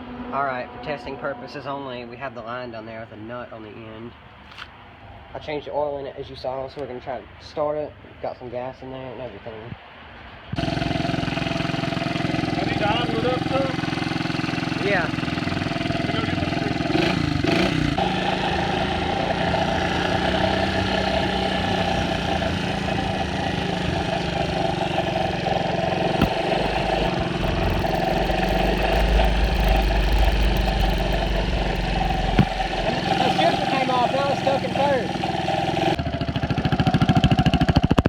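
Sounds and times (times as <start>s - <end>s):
small motorcycle engine running: 10.6s - 38.0s.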